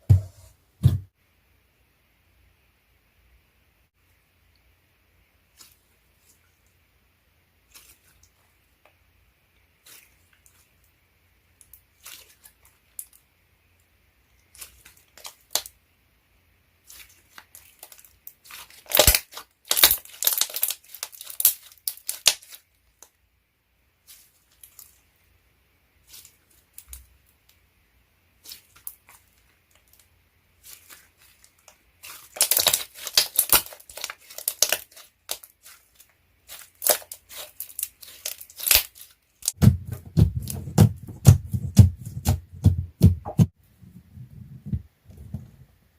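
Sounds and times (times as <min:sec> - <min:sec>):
slime crackling and tearing: 0:16.9 - 0:22.7, 0:30.6 - 0:39.6.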